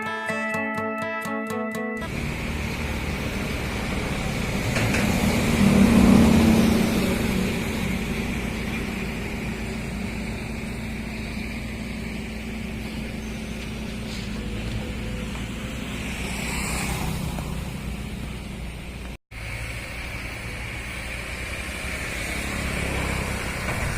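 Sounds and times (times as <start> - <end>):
excavator diesel engine running: 2.0 - 23.9.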